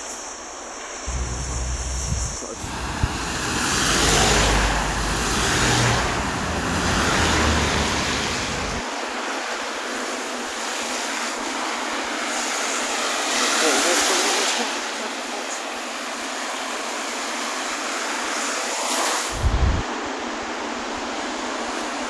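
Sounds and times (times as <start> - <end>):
wind rumbling on microphone: 1.1 - 8.8, 19.3 - 20.1
tyres hissing on wet road: 1.1 - 9.2, 17.2 - 22.0.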